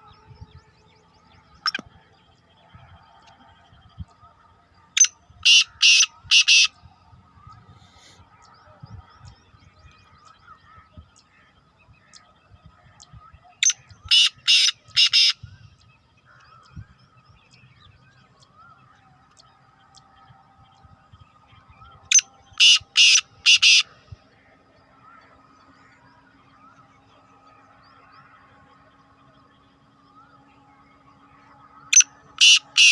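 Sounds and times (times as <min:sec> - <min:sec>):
small birds chirping: 0:00.0 - 0:32.9
bird harsh grating call: 0:05.4 - 0:06.8, 0:14.1 - 0:15.4, 0:22.6 - 0:24.0, 0:32.4 - 0:32.9.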